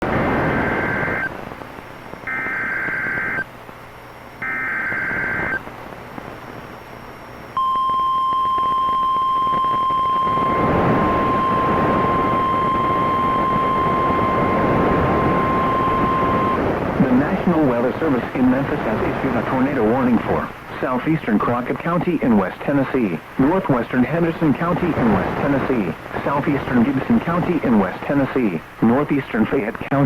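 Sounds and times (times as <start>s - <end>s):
radio hiss: 0.0s - 30.0s
buzzy digital data bursts: 0.1s - 1.3s, 2.2s - 3.4s, 4.3s - 5.6s, 6.8s - 17.8s
steady warning alarm tone: 2.2s - 3.4s, 4.4s - 5.6s, 7.6s - 16.6s.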